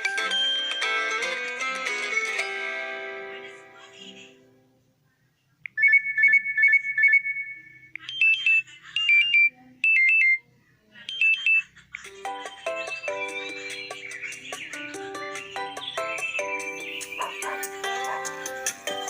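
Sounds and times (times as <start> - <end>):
plucked phone melody: 0.0 - 3.6, 11.1 - 19.0.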